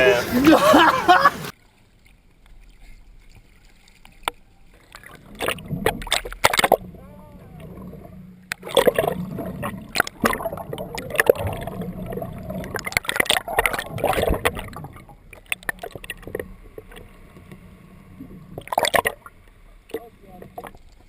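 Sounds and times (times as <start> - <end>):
boat engine running: 0.0 - 1.5, 5.9 - 12.8.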